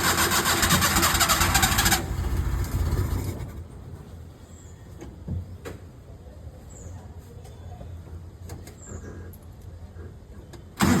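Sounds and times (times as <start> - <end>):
starter motor cranking engine: 0.0 - 3.4, 10.8 - 11.0
low engine rumble: 0.0 - 11.0.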